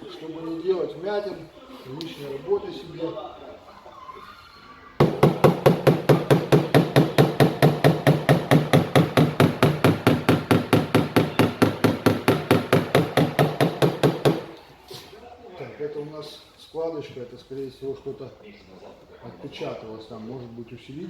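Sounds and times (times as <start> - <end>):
hammer tapping sheet metal: 5.0 - 14.6.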